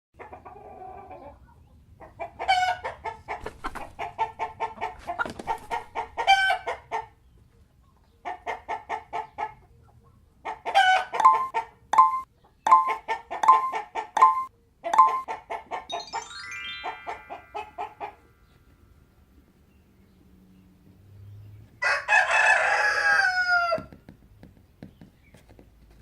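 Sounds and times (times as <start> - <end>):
chicken cackles: 0.2 - 15.9, 17.1 - 18.6, 21.8 - 24.0
chickens clucking: 0.2 - 15.9, 16.9 - 18.9.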